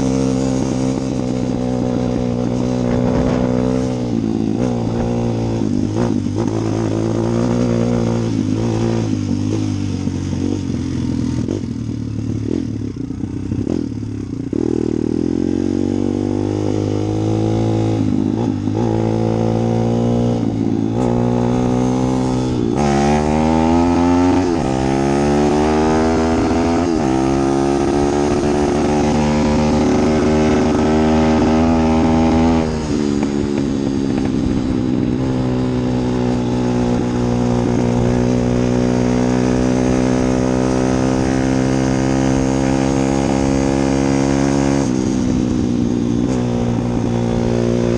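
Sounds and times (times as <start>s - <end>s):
engine revving: 0.0s - 12.9s, 13.5s - 47.9s.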